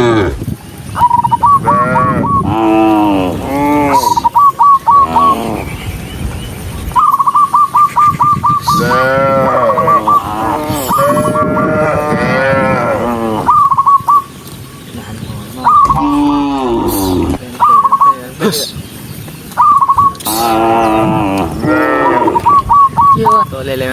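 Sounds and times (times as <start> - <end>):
cattle mooing: 1.6 - 4.3, 5.0 - 5.7, 8.7 - 13.7, 15.8 - 17.4, 20.3 - 22.6.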